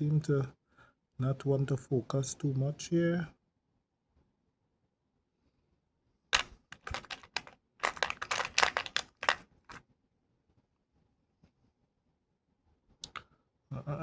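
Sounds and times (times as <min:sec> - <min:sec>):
plastic parts clicking and rattling: 0:06.4 - 0:09.8.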